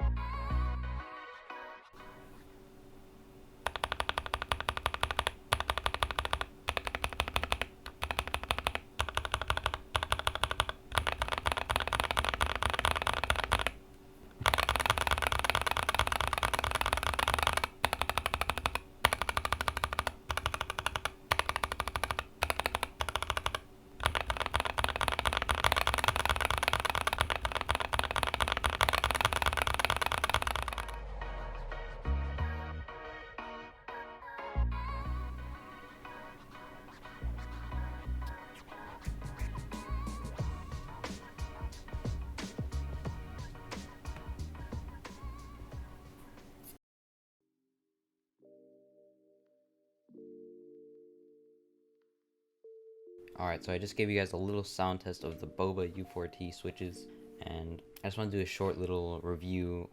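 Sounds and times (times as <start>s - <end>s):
mechanical keyboard typing: 3.6s - 13.8s, 14.4s - 31.0s.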